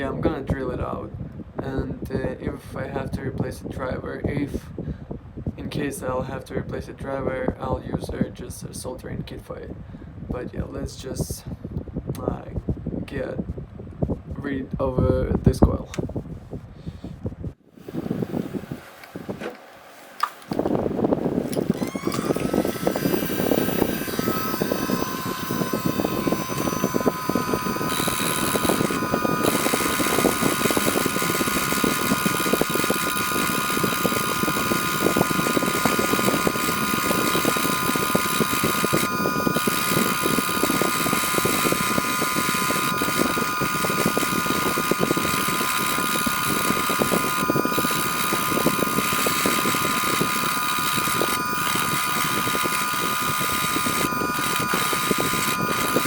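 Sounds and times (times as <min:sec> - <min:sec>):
rotary drill whining and grinding: 0:20.4 - 0:56.0.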